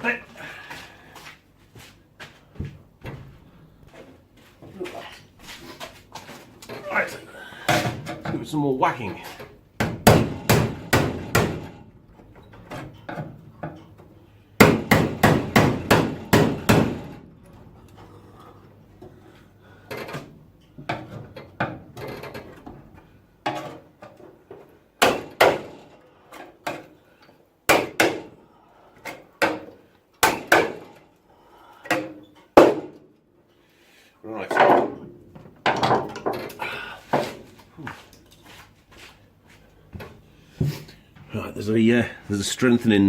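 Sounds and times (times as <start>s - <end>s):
hammer striking steel bodywork: 9.8s - 11.8s, 14.6s - 17.2s, 25.0s - 25.9s, 27.7s - 28.4s, 29.4s - 31.0s, 31.9s - 33.0s.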